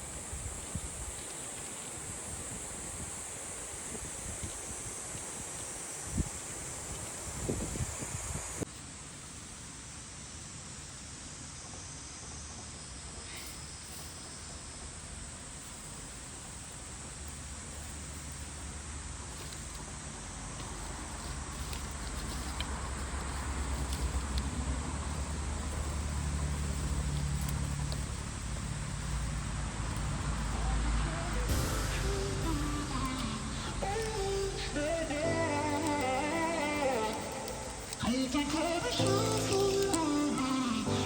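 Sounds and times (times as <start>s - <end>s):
insects chirring: 0.0s - 41.0s
faint clicks: 13.2s - 41.0s
low rumble: 23.4s - 37.7s.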